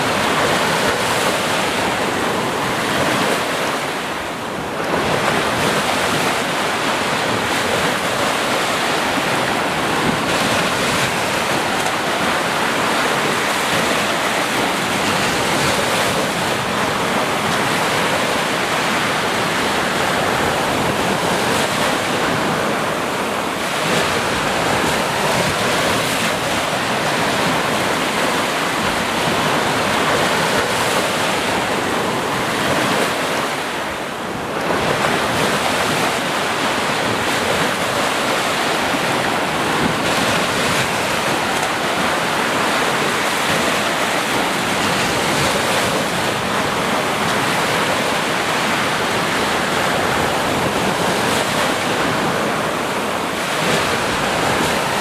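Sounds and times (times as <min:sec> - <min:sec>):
ocean waves breaking: 0:00.0 - 0:55.0.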